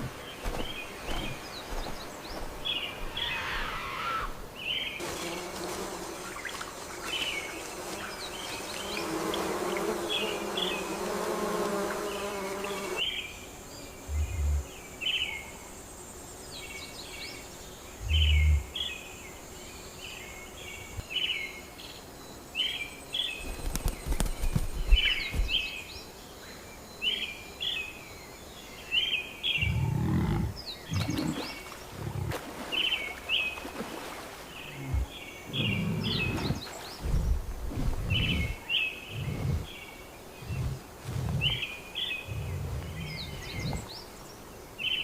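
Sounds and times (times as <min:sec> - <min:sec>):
chirping calls: 0:34.7 - 0:44.2.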